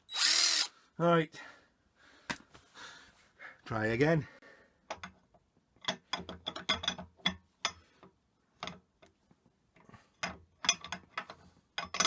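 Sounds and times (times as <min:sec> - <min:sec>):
metal parts clicking and clinking: 0:10.2 - 0:12.0.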